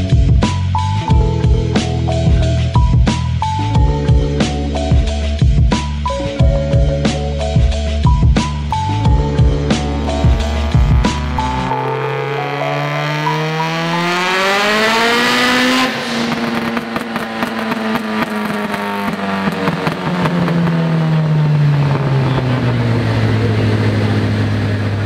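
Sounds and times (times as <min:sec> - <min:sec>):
car engine revving: 0:08.7 - 0:25.0.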